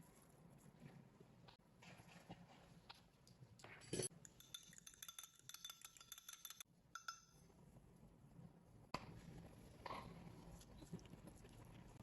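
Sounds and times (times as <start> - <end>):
utensil clinking against bowl: 4.0 - 7.4.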